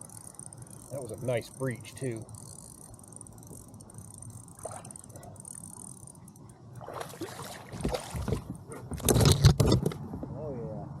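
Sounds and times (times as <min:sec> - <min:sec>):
fish splashing at the surface: 0:06.8 - 0:08.5.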